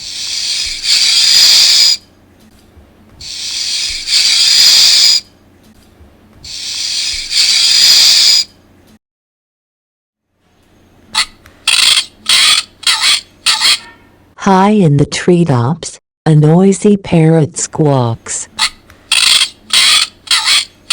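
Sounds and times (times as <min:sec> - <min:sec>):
snake hiss from speaker: 0:00.0 - 0:02.0, 0:03.2 - 0:05.2, 0:06.5 - 0:08.5.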